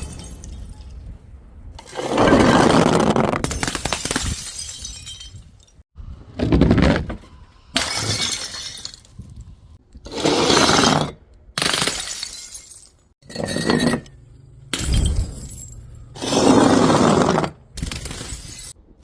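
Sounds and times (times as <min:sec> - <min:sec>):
glass bottles shattering: 0:00.0 - 0:00.9, 0:03.5 - 0:05.8, 0:07.8 - 0:09.3, 0:11.6 - 0:14.1, 0:14.7 - 0:18.8.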